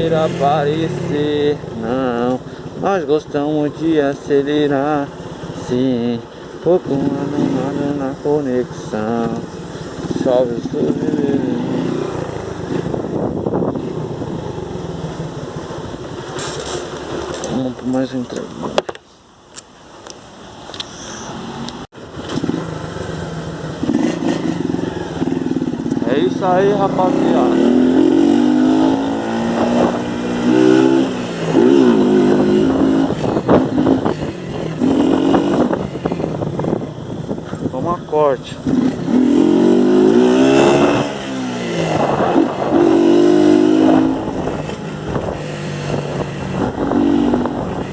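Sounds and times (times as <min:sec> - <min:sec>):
motorcycle engine running: 0:00.0 - 0:17.8, 0:22.0 - 0:47.9
wind buffeting microphone: 0:09.9 - 0:16.3, 0:23.8 - 0:47.9.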